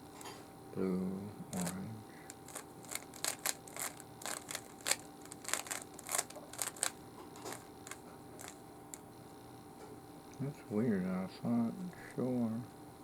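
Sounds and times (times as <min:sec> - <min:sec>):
puzzle cube plastic clicks: 0:01.5 - 0:09.0.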